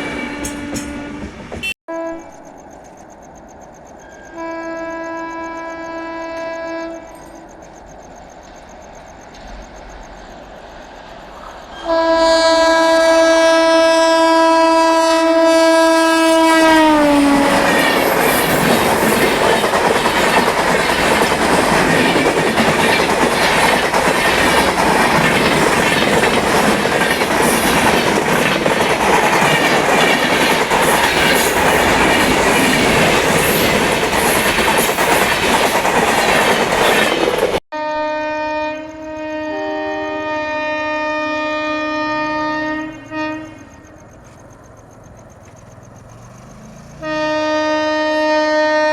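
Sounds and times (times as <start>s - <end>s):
locomotive horn: 0.0s - 2.4s, 4.3s - 7.4s, 11.8s - 19.3s, 37.7s - 44.0s, 46.9s - 48.9s
train wheels clattering on rails: 0.0s - 12.2s, 16.6s - 37.6s.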